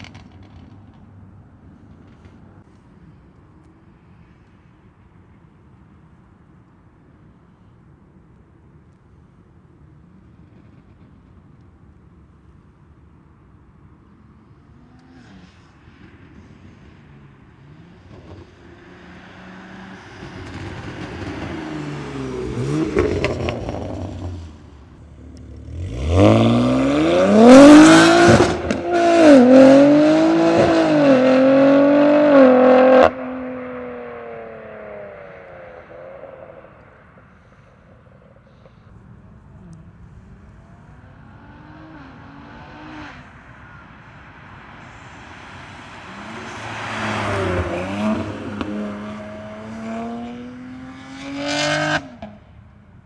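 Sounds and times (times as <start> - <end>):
car exhaust accelerating: 17.7 - 52.6.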